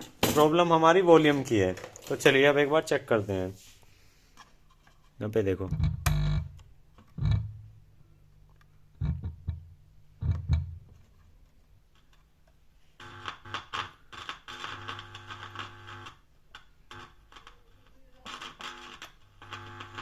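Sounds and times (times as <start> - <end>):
speaker buzzing with mains hum: 5.7 - 7.9, 8.9 - 11.0, 13.0 - 17.5, 18.3 - 20.0.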